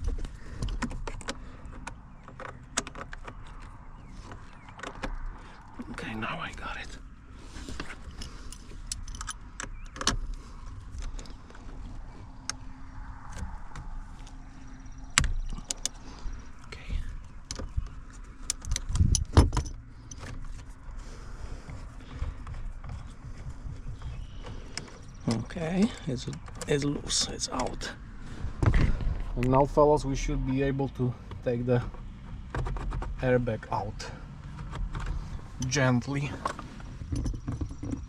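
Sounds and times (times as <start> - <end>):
hand tool clicks and rattles: 7.8 - 10.2, 15.2 - 16.0, 17.4 - 20.6
heavy thumps: 28.5 - 29.6.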